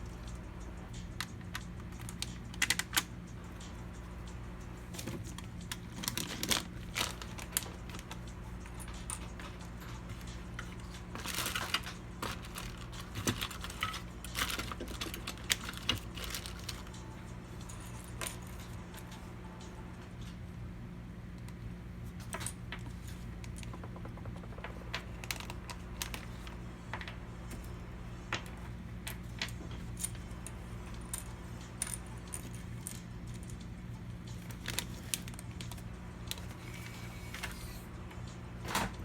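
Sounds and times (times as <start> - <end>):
small hard parts clicking: 0.0 - 4.0, 4.9 - 20.4, 28.4 - 38.3.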